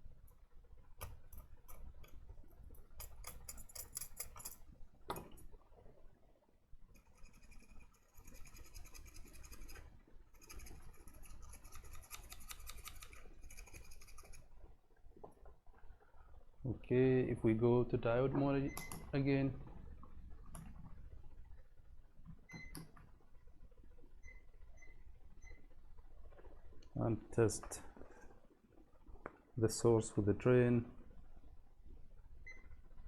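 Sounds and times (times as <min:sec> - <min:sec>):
probe tips clicking and scraping: 0:01.0 - 0:05.4, 0:07.0 - 0:14.5
multimeter continuity beeps: 0:18.3 - 0:19.1.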